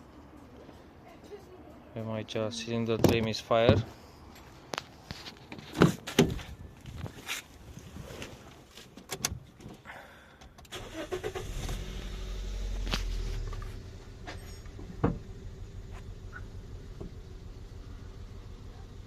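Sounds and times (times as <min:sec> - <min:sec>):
car engine cranking and idling rough: 0:09.7 - 0:19.0.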